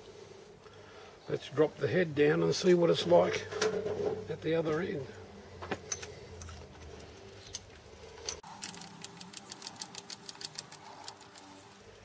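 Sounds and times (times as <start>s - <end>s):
light metallic clicks and rattles: 5.9s - 12.0s.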